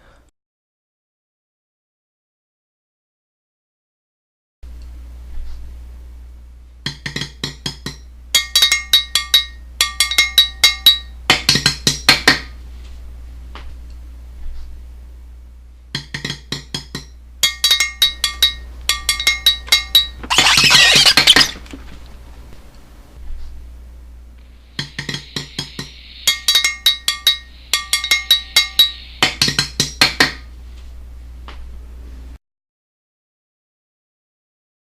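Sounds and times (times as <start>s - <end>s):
hissing rattling burst: 24.6s - 29.4s
clinking percussion strikes: 24.8s - 30.0s.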